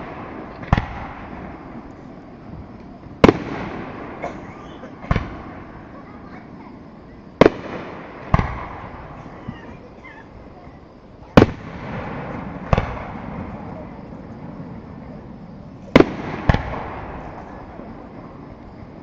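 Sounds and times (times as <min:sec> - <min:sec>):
small firework pop: 0:00.6 - 0:01.1.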